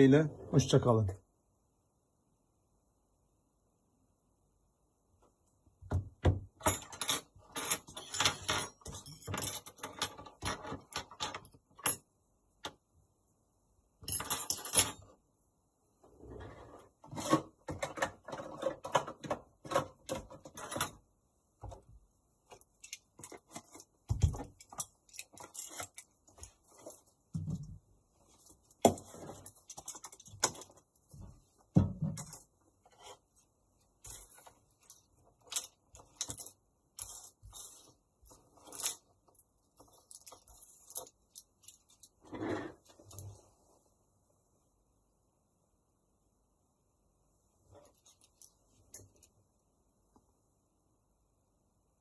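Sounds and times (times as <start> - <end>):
small objects clicking and scraping: 22.5 - 27.0, 34.0 - 42.2.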